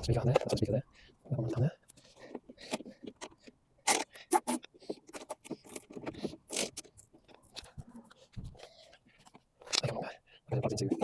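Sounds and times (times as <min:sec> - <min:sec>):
plastic connectors clicking and scraping: 0:01.4 - 0:08.6.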